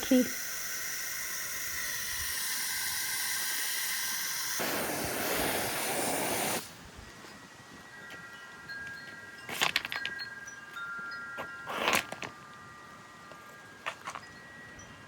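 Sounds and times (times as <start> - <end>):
garden hose spraying water: 0.0 - 7.0.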